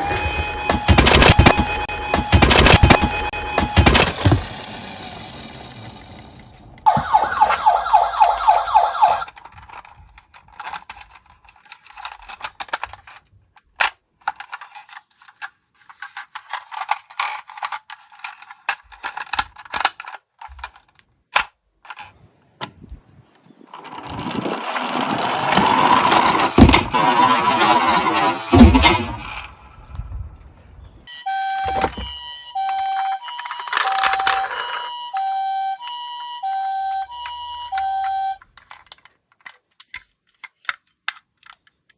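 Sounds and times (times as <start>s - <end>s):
toy ambulance siren: 0.0s - 6.1s, 6.9s - 9.4s, 31.1s - 38.5s
toy cars clicking on track: 0.8s - 6.8s, 7.4s - 22.1s, 23.8s - 29.5s, 32.6s - 36.0s, 36.9s - 41.9s
rolling rumble: 2.8s - 9.9s, 22.0s - 31.1s.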